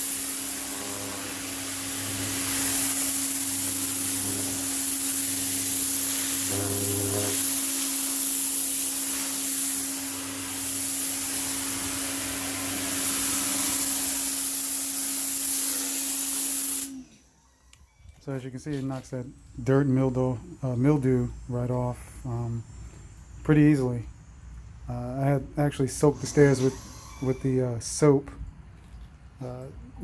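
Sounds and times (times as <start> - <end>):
pressure washer motor hum: 0.0 - 17.2
water jet hissing: 0.0 - 17.2, 25.7 - 28.0.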